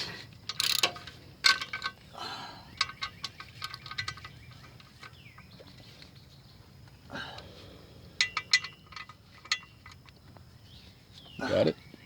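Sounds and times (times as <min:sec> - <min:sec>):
metal tools clinking: 0:00.4 - 0:02.0, 0:02.8 - 0:05.2, 0:08.2 - 0:10.1
hand ratchet clicking: 0:00.5 - 0:01.7.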